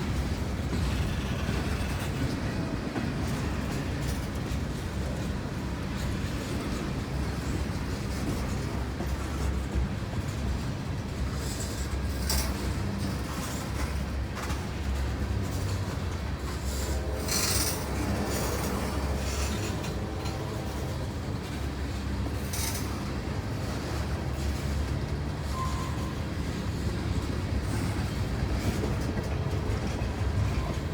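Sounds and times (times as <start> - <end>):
freight train wheels rumbling on rail: 0.0 - 30.9
high-pitched wheel squeals: 25.4 - 26.3.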